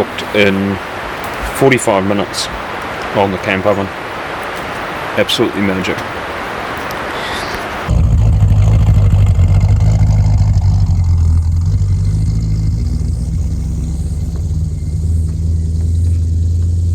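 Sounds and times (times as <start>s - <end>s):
vehicle engine rumbling: 7.8s - 16.9s.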